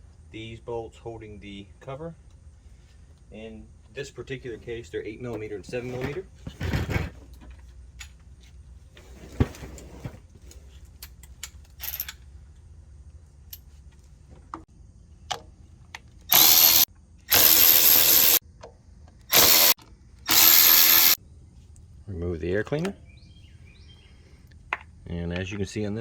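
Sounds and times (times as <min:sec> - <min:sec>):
tools clicking: 0:11.0 - 0:12.3, 0:16.3 - 0:18.4, 0:19.2 - 0:21.2
power drill running: 0:16.3 - 0:18.4, 0:19.3 - 0:21.2.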